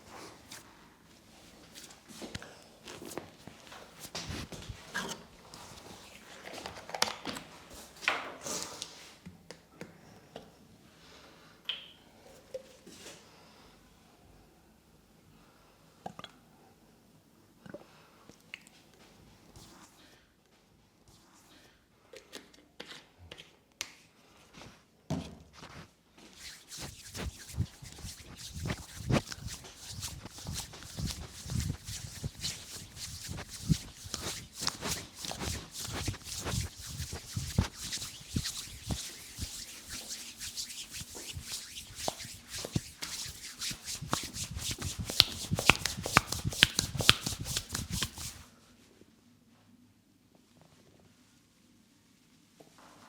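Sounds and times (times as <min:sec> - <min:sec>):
hands rubbing and slapping skin: 0:01.8 - 0:07.9, 0:26.4 - 0:48.4.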